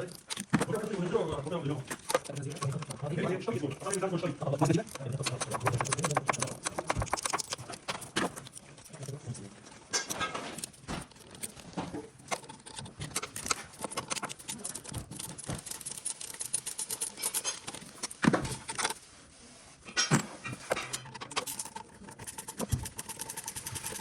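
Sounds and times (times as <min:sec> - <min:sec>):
rapid clicking: 0:00.0 - 0:09.4, 0:10.0 - 0:19.0, 0:20.7 - 0:24.0.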